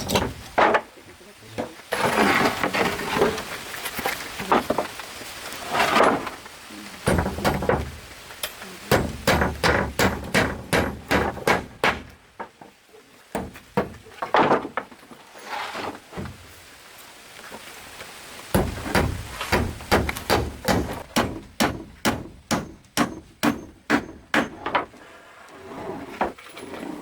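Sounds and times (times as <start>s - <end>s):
building work knocks and thuds: 0.0s - 0.9s, 4.4s - 5.0s, 7.0s - 15.2s, 15.8s - 16.5s, 18.5s - 25.0s.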